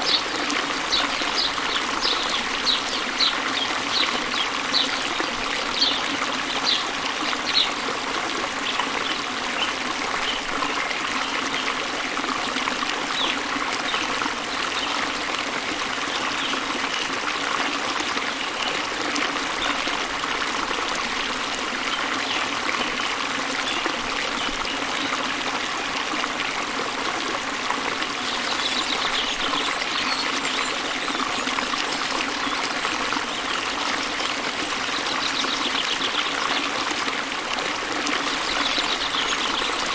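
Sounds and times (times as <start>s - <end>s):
water running and splashing: 0.0s - 39.9s.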